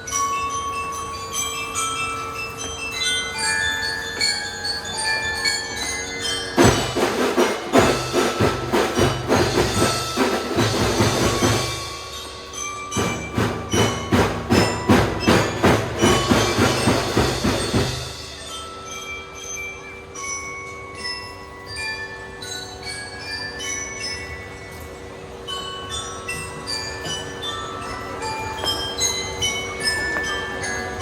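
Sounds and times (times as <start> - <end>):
bell lyra melody: 0.0 - 31.0
marching drums: 6.6 - 18.7.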